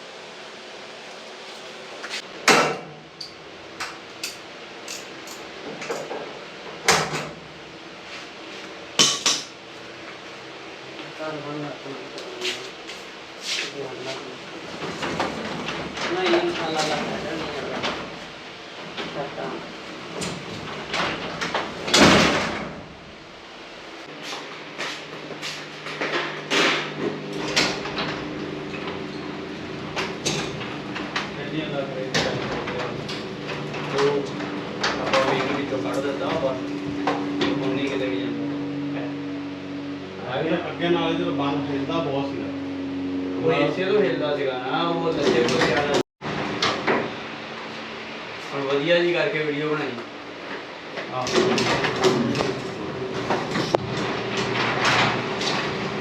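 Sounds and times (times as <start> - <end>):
garage door clattering: 14.7 - 23.1, 25.8 - 37.7, 51.0 - 56.0.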